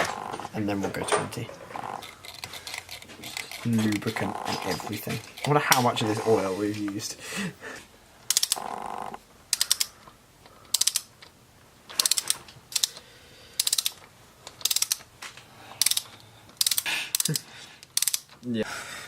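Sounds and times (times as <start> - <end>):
torque wrench ratchet clicks: 8.3 - 8.8, 9.5 - 9.9, 10.7 - 11.1, 12.0 - 13.0, 13.6 - 14.0, 14.6 - 15.0, 15.8 - 18.3.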